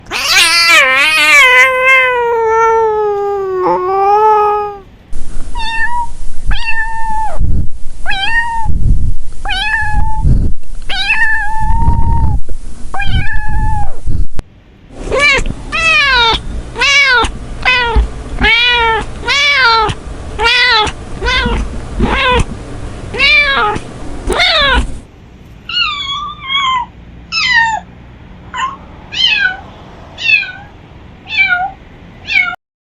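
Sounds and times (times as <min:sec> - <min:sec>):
cat yowling: 0:00.0 - 0:04.9, 0:05.5 - 0:07.4, 0:08.1 - 0:08.7, 0:09.5 - 0:10.2, 0:10.9 - 0:12.4, 0:13.0 - 0:14.0, 0:15.1 - 0:22.5, 0:23.1 - 0:25.0, 0:25.7 - 0:27.9, 0:28.5 - 0:32.6
cats meowing: 0:00.0 - 0:04.9, 0:05.5 - 0:07.4, 0:08.1 - 0:08.7, 0:09.5 - 0:10.2, 0:10.9 - 0:12.4, 0:13.0 - 0:14.0, 0:15.1 - 0:22.5, 0:23.1 - 0:25.0, 0:25.7 - 0:27.9, 0:28.5 - 0:32.6.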